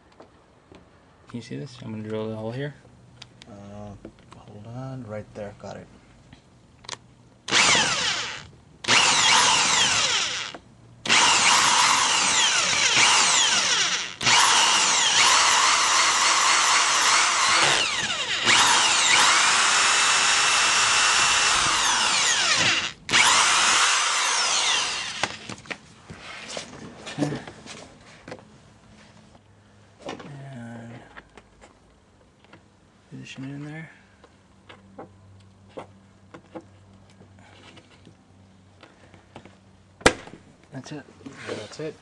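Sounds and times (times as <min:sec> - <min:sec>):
power drill drilling: 0:07.5 - 0:25.5.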